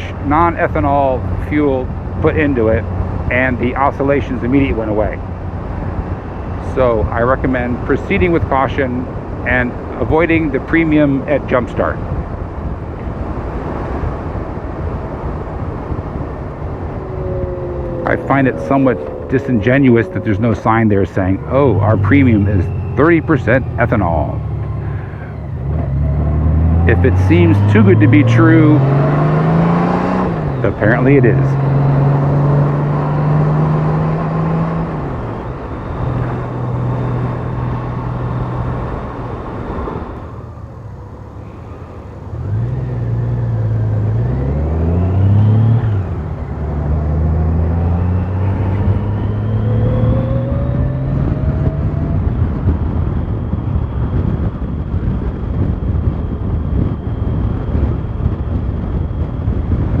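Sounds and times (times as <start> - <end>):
vehicle engine running: 0.0 - 60.0
wind on the microphone: 33.7 - 60.0.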